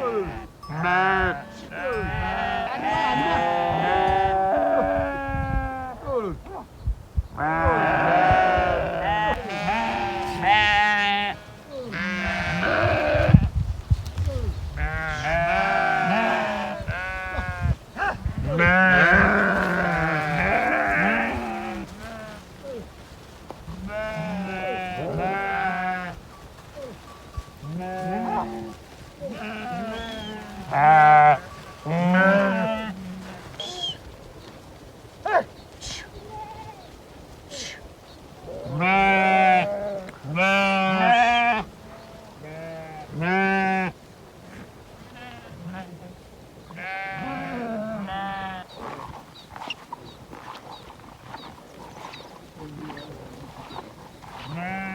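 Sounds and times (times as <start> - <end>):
sheep bleating: 0.0 - 6.0, 7.4 - 13.5, 14.8 - 22.5, 23.7 - 34.0, 38.6 - 44.0, 45.1 - 49.0, 52.6 - 54.9.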